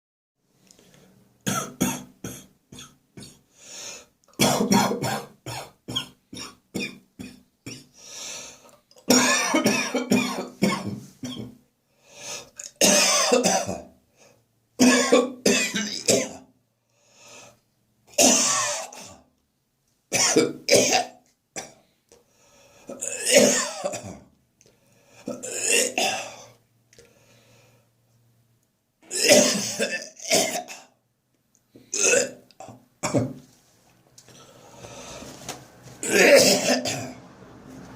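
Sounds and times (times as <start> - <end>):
person coughing and gagging: 1.4 - 3.4, 4.4 - 7.9, 9.1 - 11.6, 12.6 - 13.9, 14.8 - 16.4, 18.1 - 19.2, 20.2 - 21.8, 22.9 - 24.3, 25.3 - 26.5, 29.1 - 31.0, 31.9 - 33.4, 36.0 - 37.2.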